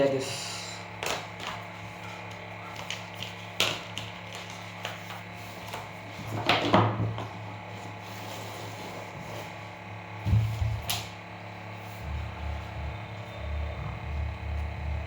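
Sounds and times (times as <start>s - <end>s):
steady low hum: 0.0s - 15.0s
scrape or rustle: 8.0s - 9.6s.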